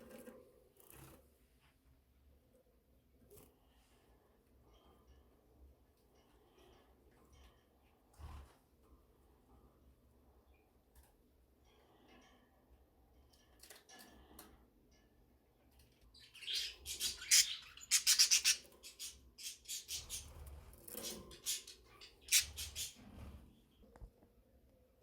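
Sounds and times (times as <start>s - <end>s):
budgerigars chirping and squawking: 16.2s - 23.2s.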